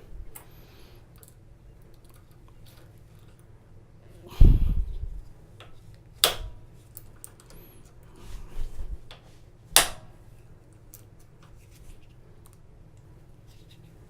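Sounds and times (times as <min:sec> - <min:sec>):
lock and key handling clicks: 0:00.3 - 0:03.4, 0:05.6 - 0:08.0.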